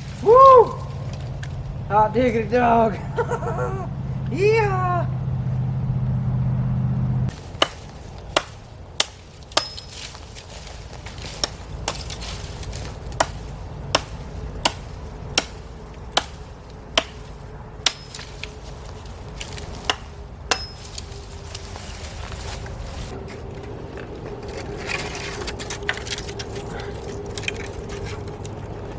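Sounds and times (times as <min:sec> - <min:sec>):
steady low rumble: 0:00.0 - 0:28.9
hand tool striking wood: 0:07.3 - 0:23.1.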